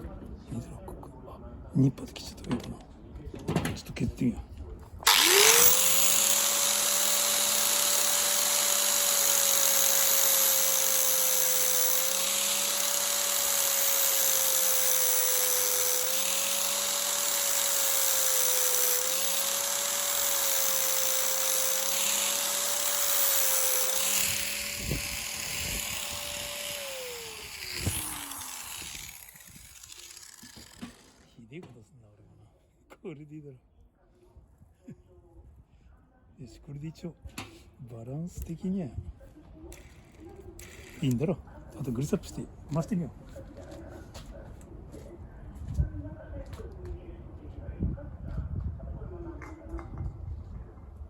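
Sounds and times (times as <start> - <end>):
rotary tool whining and grinding: 5.1 - 31.3, 39.7 - 41.3.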